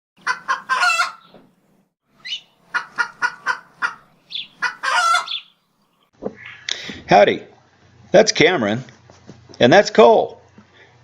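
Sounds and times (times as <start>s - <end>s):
poultry calling: 0.2s - 1.4s, 2.2s - 5.6s.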